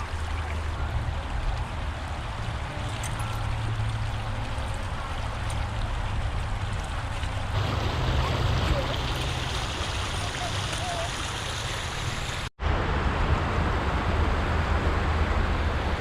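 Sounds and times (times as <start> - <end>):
small stream running: 0.0 - 12.5
distant highway traffic hum: 0.0 - 16.0.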